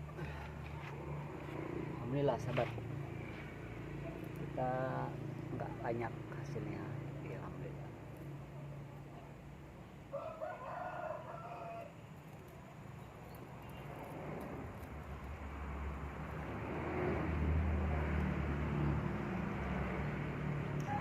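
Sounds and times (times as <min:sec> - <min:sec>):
rooster crowing: 0:10.1 - 0:12.0, 0:20.8 - 0:21.0.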